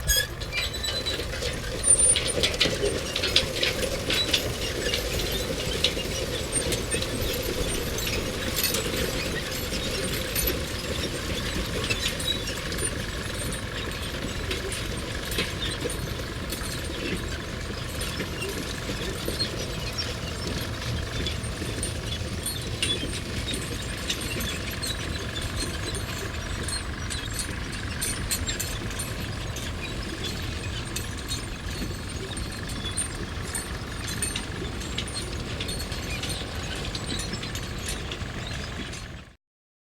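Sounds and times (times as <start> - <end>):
metal clinking and rattling: 0.0 - 39.1.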